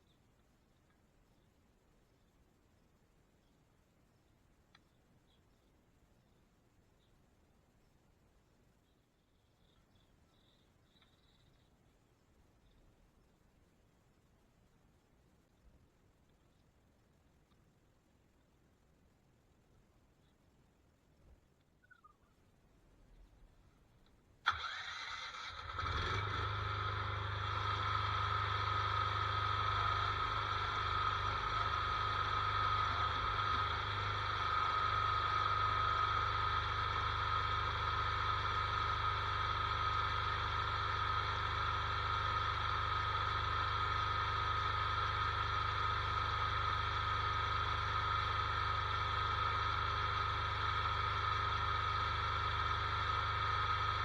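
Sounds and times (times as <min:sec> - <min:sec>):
tractor engine running: 0:24.5 - 0:54.0
high whine: 0:25.8 - 0:54.0.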